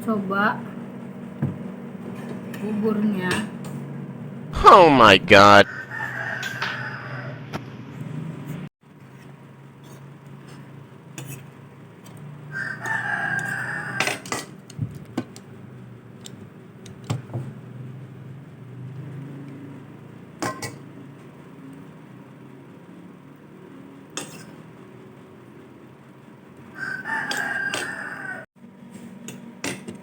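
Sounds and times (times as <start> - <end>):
rooster crowing: 5.7 - 7.5, 12.5 - 14.3, 26.7 - 28.5.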